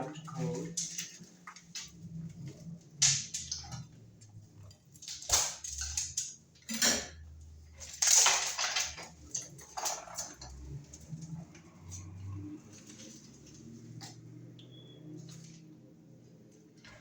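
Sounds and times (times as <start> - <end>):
tools clattering and scraping on wall: 0.0 - 14.4.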